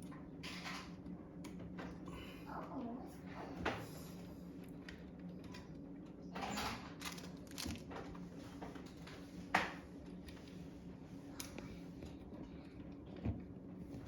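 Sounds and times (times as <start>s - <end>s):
steady low hum: 0.0s - 14.0s
plastic toys clicking and knocking: 6.7s - 8.1s.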